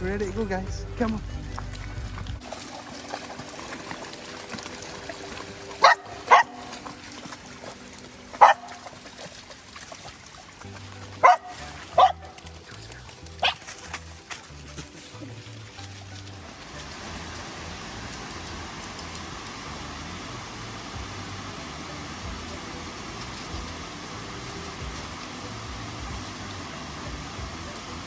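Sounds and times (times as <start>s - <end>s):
background music with bass beat: 0.0s - 2.4s, 11.6s - 28.0s
small dogs barking: 5.8s - 7.0s, 8.4s - 8.9s, 11.2s - 13.8s.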